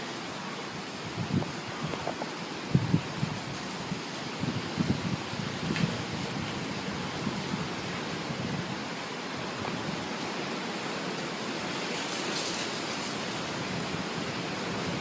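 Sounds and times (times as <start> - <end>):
strong wind rushing: 0.8 - 10.8.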